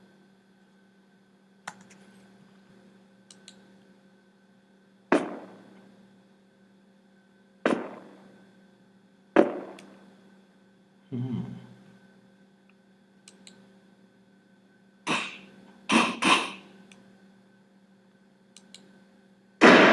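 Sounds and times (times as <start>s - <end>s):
steady low hum: 0.0s - 19.9s
faint clicks: 3.3s - 3.6s, 18.6s - 18.9s
sharp gunshots: 5.1s - 5.6s, 7.7s - 8.2s, 9.4s - 9.8s, 19.6s - 19.9s.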